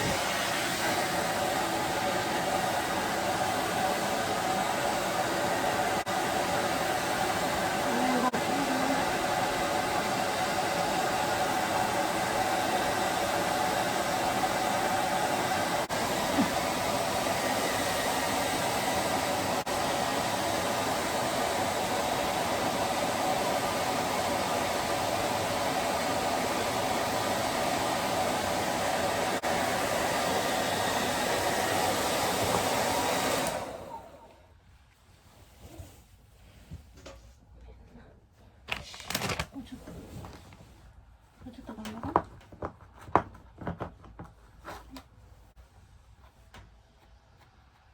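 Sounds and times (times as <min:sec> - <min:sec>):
hair dryer blowing: 0:00.0 - 0:34.6.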